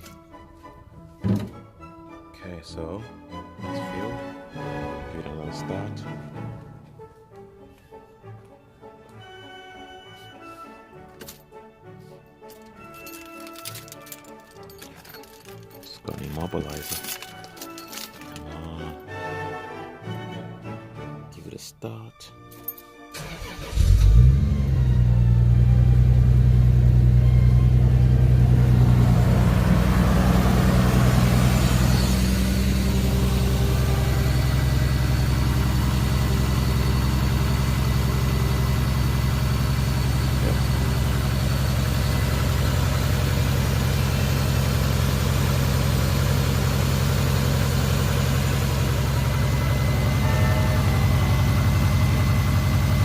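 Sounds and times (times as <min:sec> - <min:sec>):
car engine starting and idling: 0:23.1 - 0:53.0.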